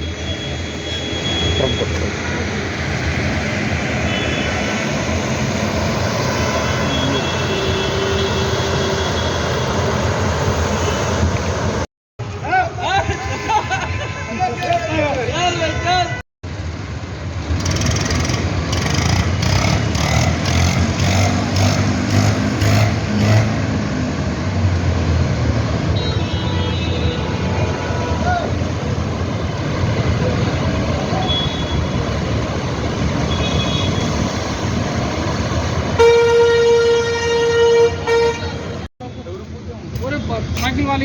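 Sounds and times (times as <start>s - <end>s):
street noise: 0.0s - 41.0s
vehicle engines running: 16.4s - 26.0s, 26.9s - 41.0s.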